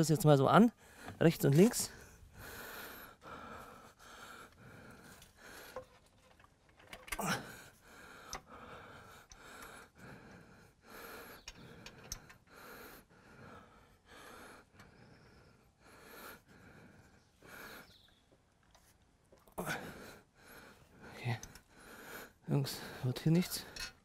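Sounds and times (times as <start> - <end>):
man breathing hard: 0.8 - 1.2, 1.9 - 6.0, 7.1 - 18.1, 19.5 - 24.0
faint metal clicks: 4.5 - 7.5, 11.3 - 12.5, 21.3 - 21.7.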